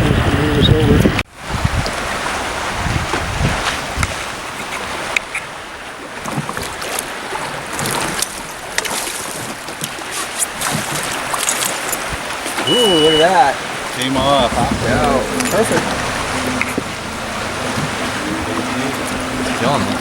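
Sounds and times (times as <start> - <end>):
wind on microphone: 0.0 - 5.6, 12.0 - 20.0
water lapping against boat: 1.3 - 20.0.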